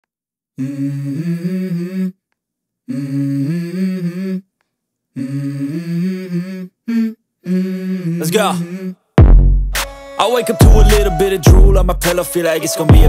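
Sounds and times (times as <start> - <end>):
hummed vocal melody: 0.6 - 2.2, 2.8 - 4.5, 5.1 - 9.1, 9.9 - 13.0.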